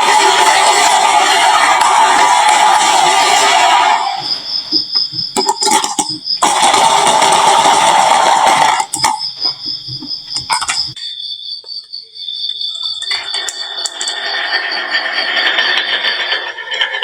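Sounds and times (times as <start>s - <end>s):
marbles rolling down wooden slope: 0.0s - 4.3s, 5.4s - 8.9s, 13.0s - 17.0s
marbles clicking: 13.0s - 17.0s.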